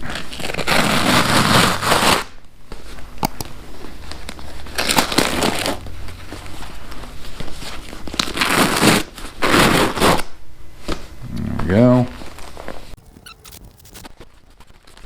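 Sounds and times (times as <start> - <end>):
plastic crinkling and rustling: 13.0 - 15.0
sharp clicks: 13.0 - 15.0.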